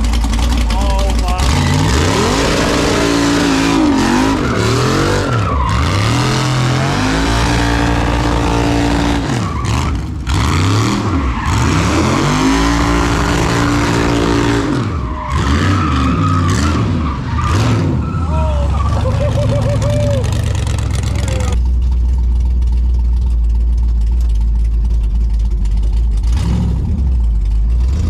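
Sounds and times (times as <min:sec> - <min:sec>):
car engine revving: 0:00.0 - 0:21.6
tires squealing: 0:00.0 - 0:21.6.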